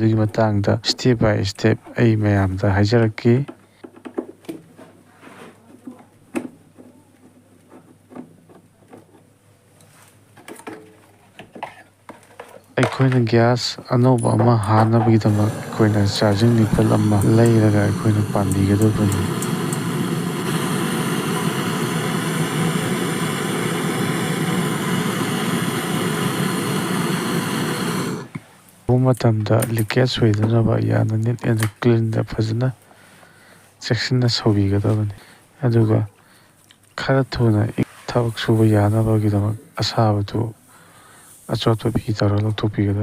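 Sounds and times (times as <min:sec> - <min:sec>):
gas torch rushing: 0:13.5 - 0:28.4.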